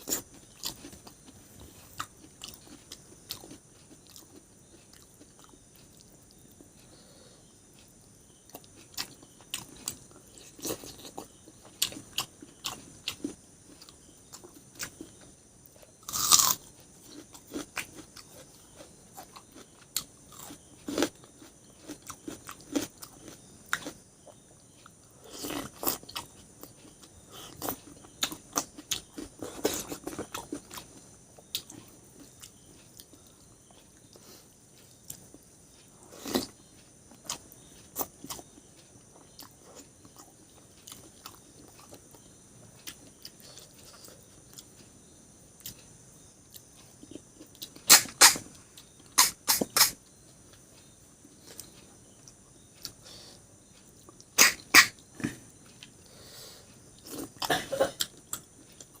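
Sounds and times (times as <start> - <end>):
person chewing and biting: 16.0 - 33.8.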